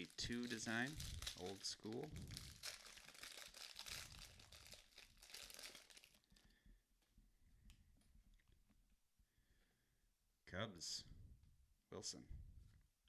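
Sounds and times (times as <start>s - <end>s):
plastic wrapper crinkling: 0.0s - 6.6s.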